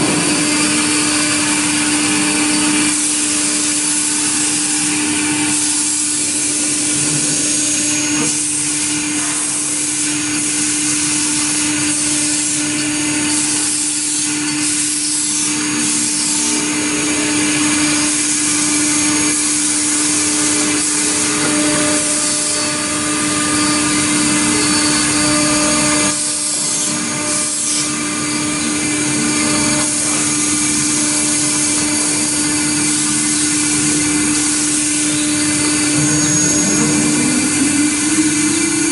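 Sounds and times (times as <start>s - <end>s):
end mill cutting aluminum hiss: 0.0s - 38.9s
router spindle humming: 0.0s - 38.9s.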